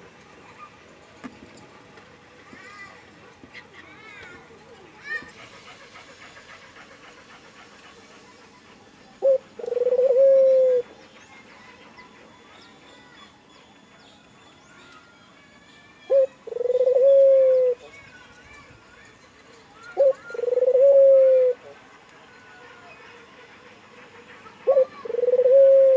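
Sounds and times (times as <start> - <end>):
collared dove cooing: 9.2 - 11.0, 16.1 - 17.8, 20.0 - 21.8, 24.5 - 25.9.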